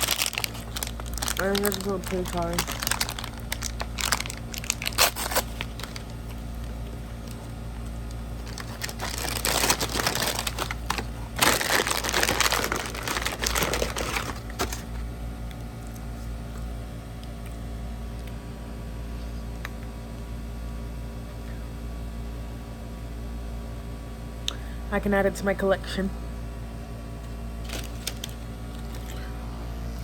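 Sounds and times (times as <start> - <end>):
packaging crinkling and rustling: 0.0 - 15.1, 27.6 - 29.1.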